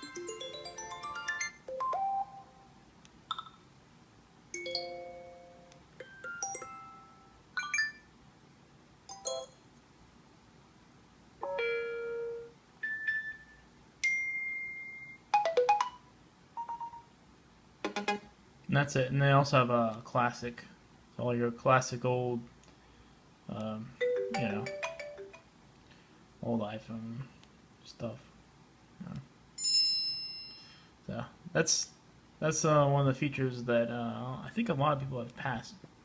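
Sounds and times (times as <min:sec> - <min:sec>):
ringtone melody: 0:00.0 - 0:02.7, 0:04.6 - 0:08.1, 0:09.1 - 0:09.6, 0:11.4 - 0:17.1, 0:17.8 - 0:18.3, 0:24.0 - 0:25.4
short chiming tones: 0:29.6 - 0:30.9.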